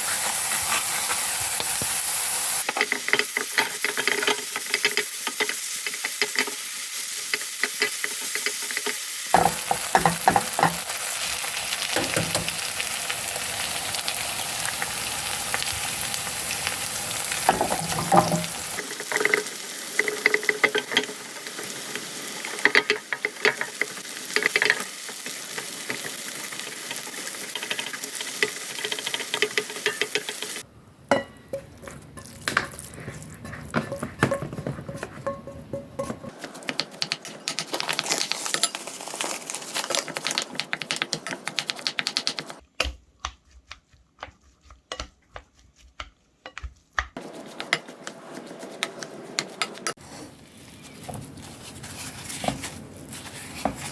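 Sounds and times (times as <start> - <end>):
food sizzling in a frying pan: 0.0 - 36.5
utensil scraping a pan: 16.0 - 21.7, 31.3 - 37.7, 47.2 - 53.9.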